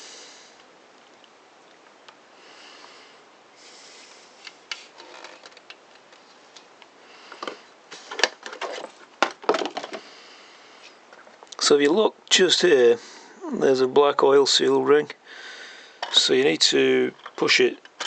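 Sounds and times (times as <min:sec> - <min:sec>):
saw parts clicking and knocking: 0:17.1 - 0:18.0.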